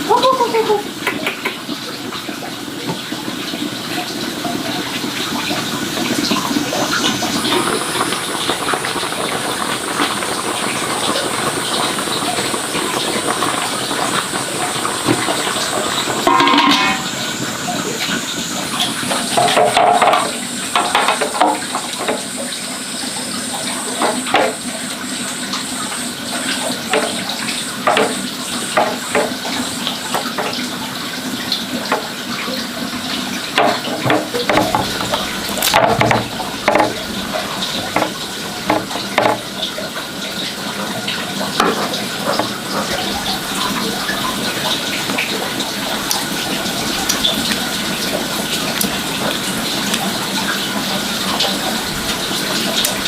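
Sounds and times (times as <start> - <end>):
water running: 0.0 - 53.0
knocks and clatters: 16.0 - 17.2, 19.3 - 22.3, 26.9 - 29.4, 33.6 - 39.7.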